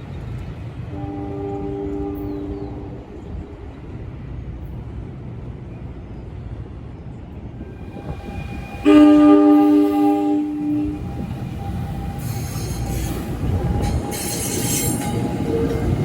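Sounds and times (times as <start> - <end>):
train rumbling on tracks: 0.0 - 16.0
train horn blast: 0.9 - 3.2, 8.7 - 15.9.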